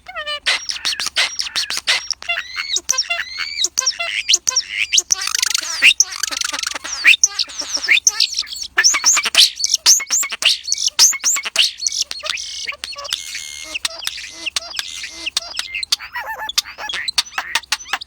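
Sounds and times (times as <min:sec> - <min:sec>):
starling singing: 0:00.0 - 0:18.0.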